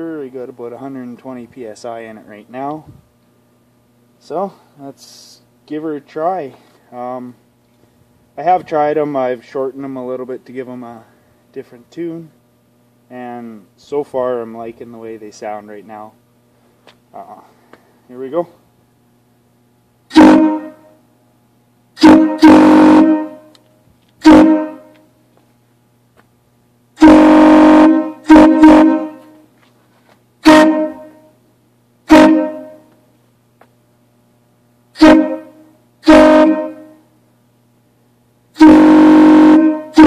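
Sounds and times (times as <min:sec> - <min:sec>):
air horn blasts: 0:20.1 - 0:21.0, 0:22.0 - 0:23.6, 0:24.2 - 0:25.2, 0:27.0 - 0:29.5, 0:30.4 - 0:31.4, 0:32.0 - 0:33.0, 0:34.9 - 0:37.1, 0:38.5 - 0:40.0.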